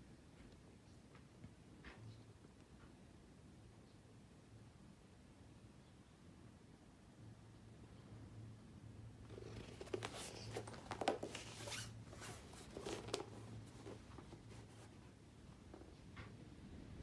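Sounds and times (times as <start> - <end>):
metal zipper rasping and clicking: 9.3 - 13.2.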